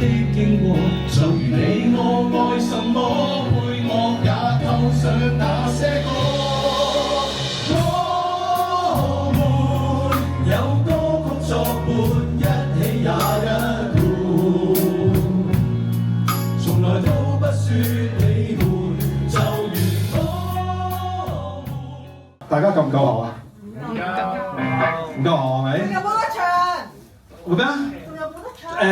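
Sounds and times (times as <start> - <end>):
people singing over a band: 0.0 - 15.7, 16.7 - 22.0
held bass notes: 0.0 - 22.3
drum hits: 5.6 - 20.7.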